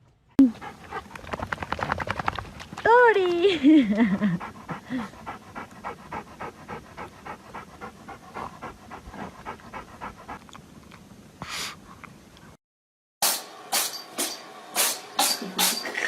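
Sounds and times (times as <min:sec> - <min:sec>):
dog panting: 0:00.4 - 0:02.4, 0:03.8 - 0:10.6.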